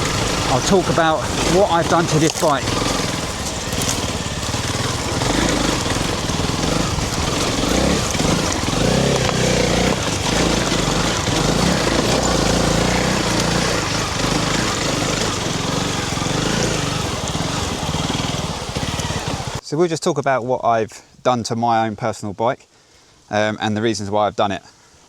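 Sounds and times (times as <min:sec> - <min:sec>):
motorcycle engine running: 0:00.0 - 0:19.6.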